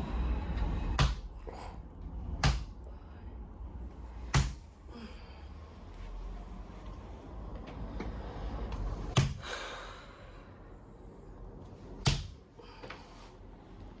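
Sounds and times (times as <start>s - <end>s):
hand slapping a back: 1.0s - 1.4s, 2.3s - 2.9s, 4.3s - 4.7s, 9.1s - 9.5s, 12.0s - 12.5s.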